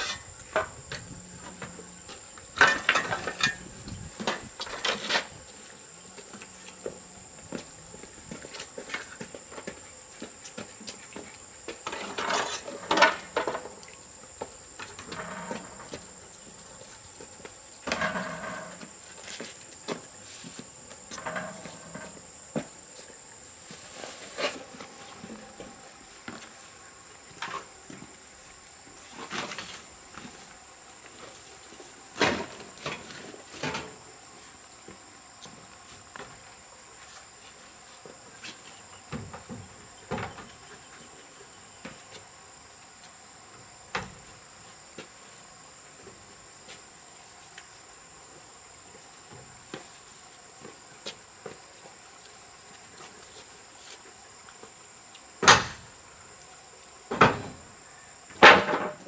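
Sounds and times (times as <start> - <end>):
objects knocking and clunking: 2.5 - 5.4, 17.8 - 18.9, 58.4 - 59.0.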